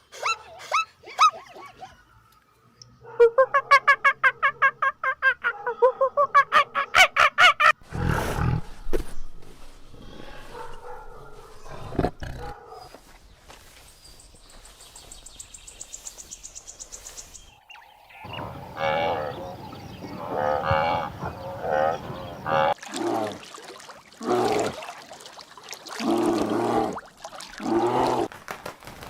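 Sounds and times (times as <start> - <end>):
cattle mooing: 18.4 - 22.8.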